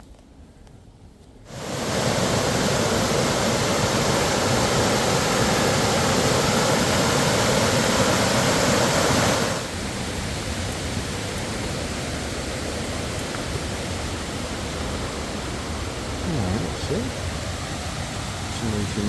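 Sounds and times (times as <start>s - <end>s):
steady rushing noise: 1.5s - 11.1s.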